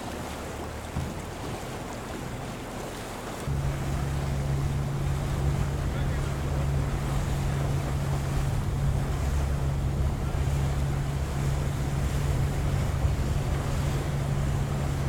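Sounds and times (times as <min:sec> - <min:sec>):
boat engine droning: 0:00.0 - 0:15.0
water wash: 0:00.0 - 0:15.0
wind buffeting microphone: 0:03.4 - 0:15.0.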